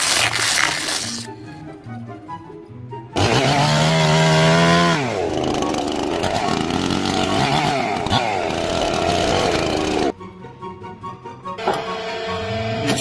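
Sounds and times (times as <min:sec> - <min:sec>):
power tool running: 0:03.2 - 0:10.1, 0:11.6 - 0:13.0.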